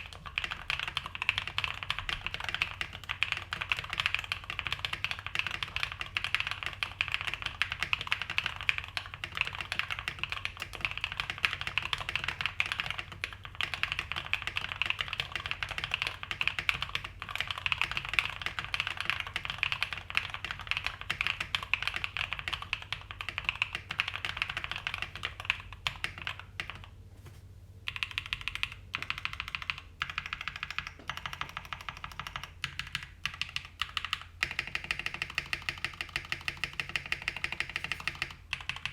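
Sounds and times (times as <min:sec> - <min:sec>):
fast typing on mechanical keyboard: 0:00.0 - 0:26.9, 0:27.9 - 0:38.9.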